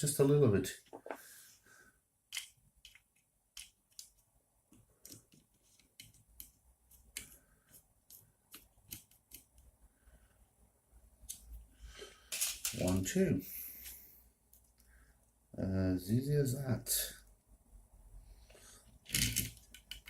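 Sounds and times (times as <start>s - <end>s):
small screws and tool clicking: 2.3s - 9.7s, 18.9s - 20.0s.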